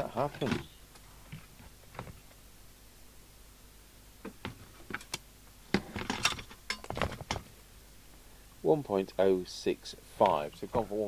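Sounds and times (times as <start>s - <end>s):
small objects clicking and tapping: 6.1s - 7.5s.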